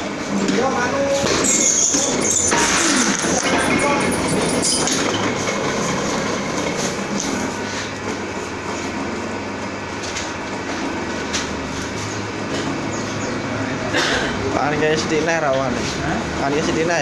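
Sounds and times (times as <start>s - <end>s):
paper-cutting machine rattling: 0.3s - 12.8s.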